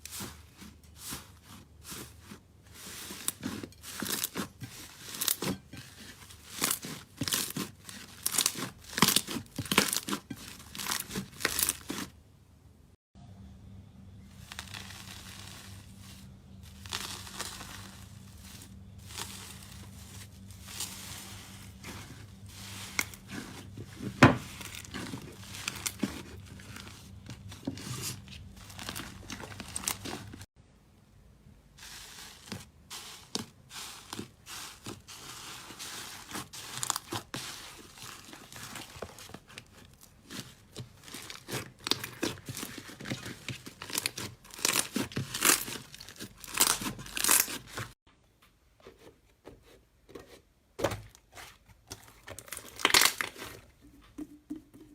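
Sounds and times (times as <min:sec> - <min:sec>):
slime crackling and squelching: 0:00.0 - 0:12.2, 0:14.2 - 0:30.5, 0:31.8 - 0:48.0, 0:51.2 - 0:53.8.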